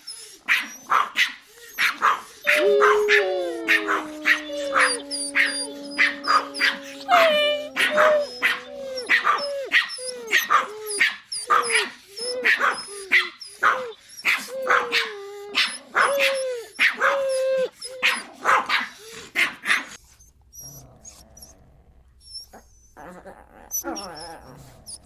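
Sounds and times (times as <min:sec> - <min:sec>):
small dog barking: 0:02.8 - 0:17.2, 0:18.0 - 0:19.9.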